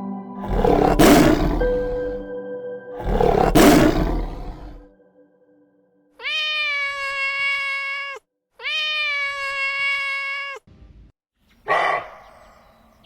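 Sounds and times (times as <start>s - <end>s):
animal calling: 0.4s - 2.2s, 3.0s - 4.9s.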